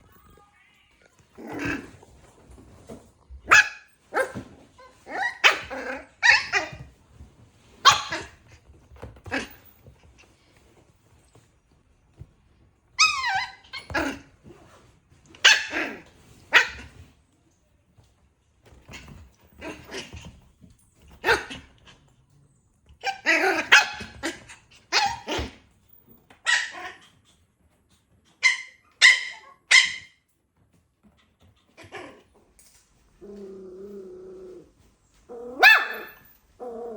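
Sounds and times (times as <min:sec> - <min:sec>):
puppy barking and yelping: 0:03.4 - 0:06.9, 0:07.8 - 0:08.4, 0:13.0 - 0:14.2, 0:15.4 - 0:17.0, 0:23.0 - 0:25.6, 0:26.3 - 0:27.4, 0:28.2 - 0:30.2, 0:35.3 - 0:36.9.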